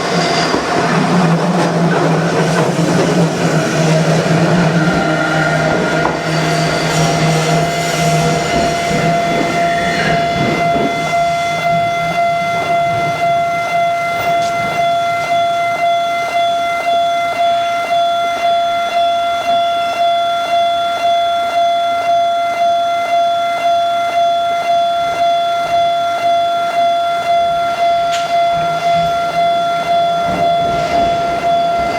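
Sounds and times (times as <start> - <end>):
level-crossing warning bell ringing: 0.0 - 31.9.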